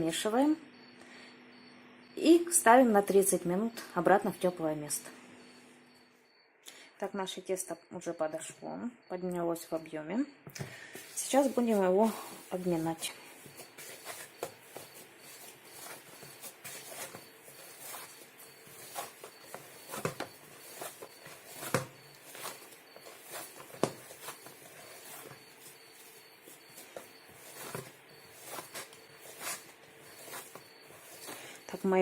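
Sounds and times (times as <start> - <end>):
hands kneading dough: 10.7 - 32.0.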